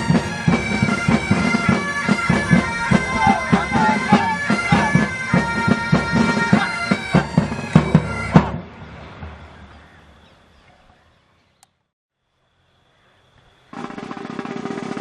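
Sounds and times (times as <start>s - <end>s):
bagpipes playing: 0.0s - 8.5s
drum beats: 0.0s - 8.7s, 13.7s - 15.0s.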